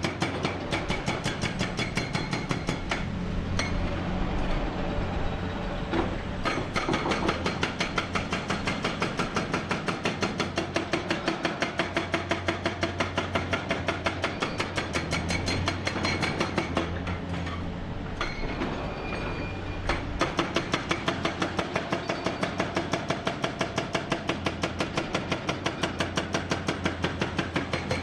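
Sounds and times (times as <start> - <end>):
diesel engine low tone: 2.8 - 6.8, 14.2 - 21.3.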